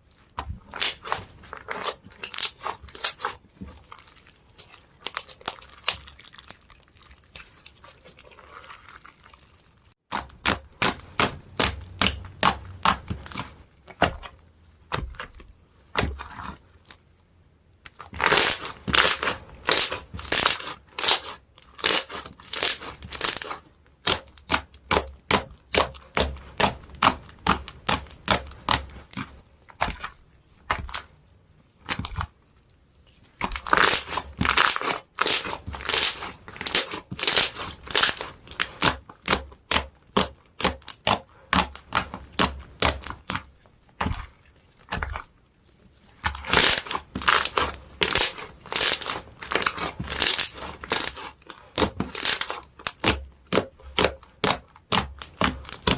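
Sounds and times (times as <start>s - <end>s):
slime squeezed by hand: 18.0s - 24.8s, 33.4s - 40.3s.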